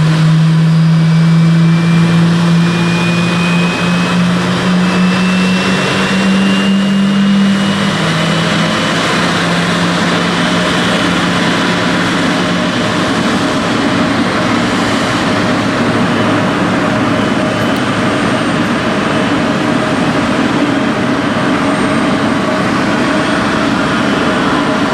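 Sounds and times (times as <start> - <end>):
faint high whine: 0.0 - 24.9
jet engines running: 0.0 - 24.9
low hum: 0.0 - 24.9.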